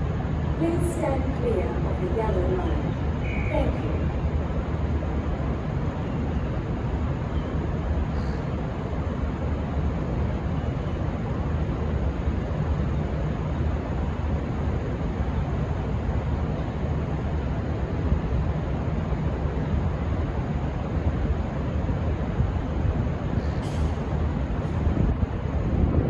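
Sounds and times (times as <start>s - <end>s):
diesel engines rumbling: 0.0s - 26.0s.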